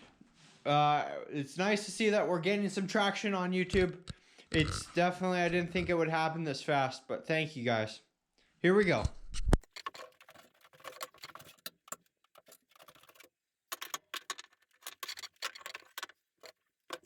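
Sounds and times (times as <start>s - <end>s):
objects clicking and scraping: 3.7s - 6.0s, 9.4s - 17.0s.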